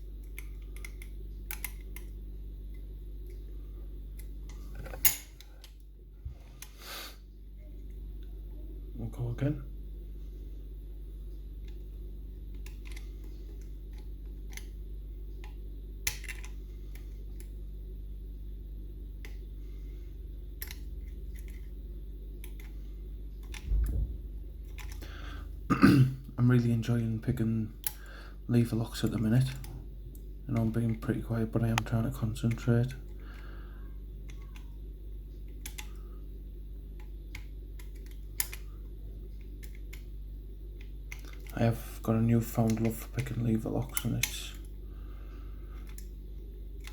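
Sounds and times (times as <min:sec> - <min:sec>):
low steady hum: 0:00.0 - 0:46.9
lock picks clicking and scraping: 0:12.6 - 0:14.7, 0:24.6 - 0:25.0
lock picking tools clicking: 0:24.6 - 0:25.0.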